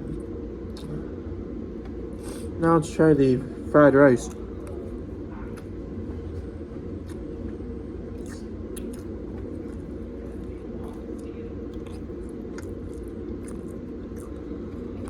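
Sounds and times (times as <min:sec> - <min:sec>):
person chewing food: 0:00.0 - 0:01.1, 0:04.2 - 0:15.0
low room rumble: 0:00.0 - 0:15.0.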